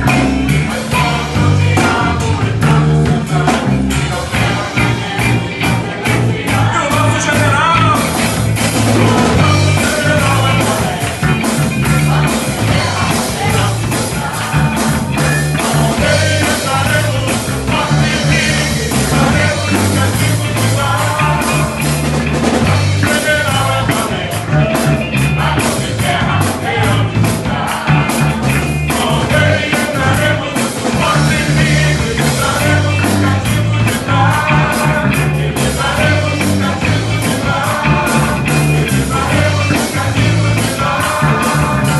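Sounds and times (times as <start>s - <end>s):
band playing rock-style song: 0.0s - 41.9s
pulsing bass line: 0.0s - 41.9s
steady drums: 0.0s - 41.9s
person singing: 8.8s - 21.8s.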